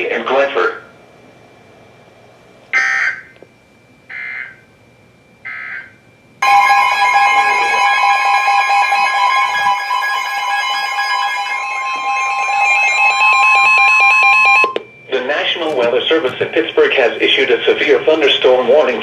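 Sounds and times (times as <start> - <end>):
loud steady alert tone: 5.5 - 19.0
digital data bursts: 6.5 - 9.6.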